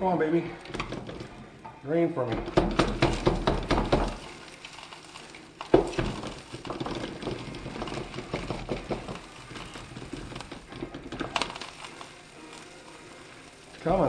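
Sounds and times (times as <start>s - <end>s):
birdseed pattering through funnel: 0.0s - 14.0s.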